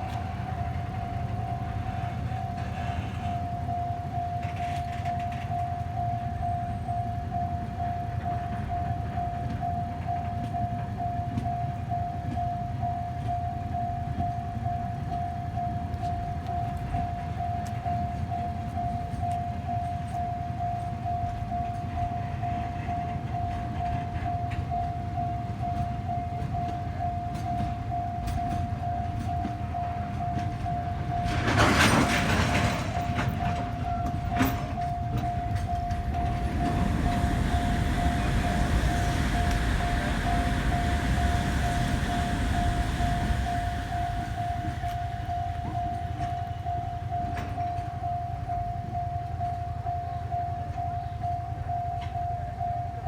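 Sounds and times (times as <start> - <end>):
level-crossing warning bell: 0.0 - 53.0
low rumble: 35.2 - 46.2
loud rushing burst: 35.9 - 45.3.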